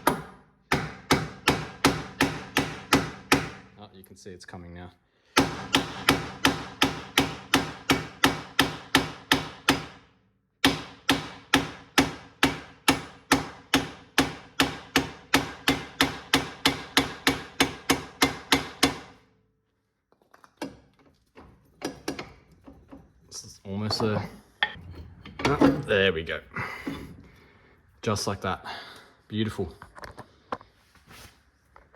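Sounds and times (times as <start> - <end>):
hammer striking through wood: 0.0 - 3.7, 5.3 - 19.2.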